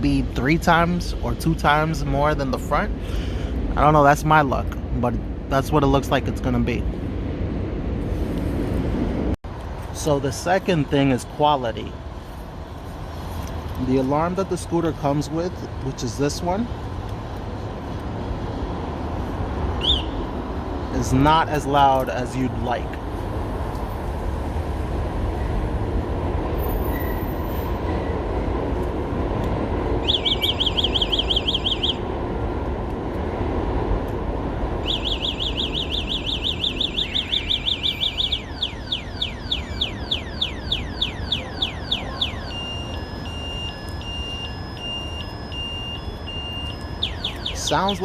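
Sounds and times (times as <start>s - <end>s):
scooter alarm warbling and beeping: 30.0s - 32.0s, 34.8s - 48.0s.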